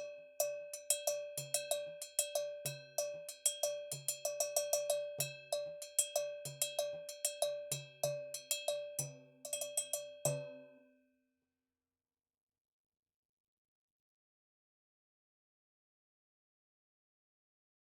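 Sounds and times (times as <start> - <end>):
cowbell struck with a stick: 0.0 - 10.8.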